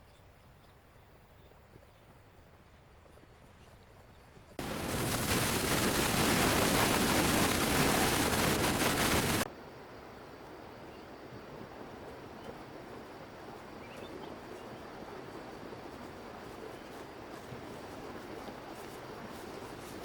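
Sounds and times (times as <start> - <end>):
faint outdoor ambience: 0.0 - 20.0
loud steady rushing noise: 4.6 - 9.5.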